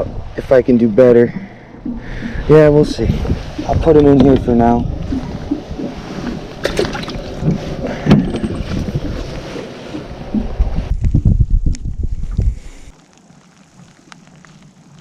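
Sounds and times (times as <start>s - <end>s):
wind buffeting microphone: 0.0s - 12.9s
water noise around boat: 0.0s - 15.0s
knocks against boat: 6.6s - 9.0s.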